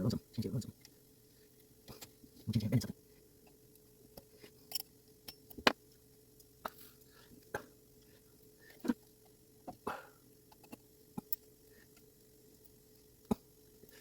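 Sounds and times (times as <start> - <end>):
faint steady hum: 0.0 - 14.0
clock parts clicking and tapping: 10.5 - 13.4.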